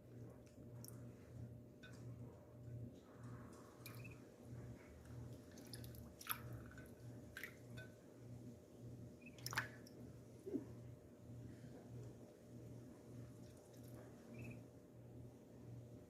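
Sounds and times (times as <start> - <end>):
water dripping: 1.8 - 2.3, 3.2 - 4.2, 5.3 - 8.0, 9.2 - 10.0
small wet clicks: 3.1 - 4.2, 5.0 - 7.8, 9.2 - 10.0.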